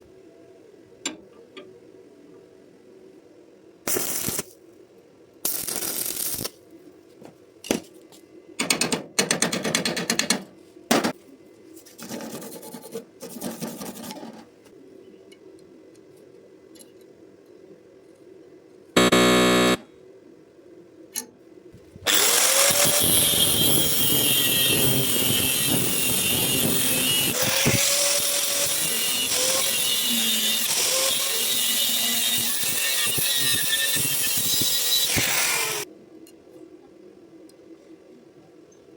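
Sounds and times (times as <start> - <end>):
welding arc burning: 3.9 - 4.6, 5.4 - 6.6, 22.1 - 35.9
loud buzz: 19.0 - 19.9.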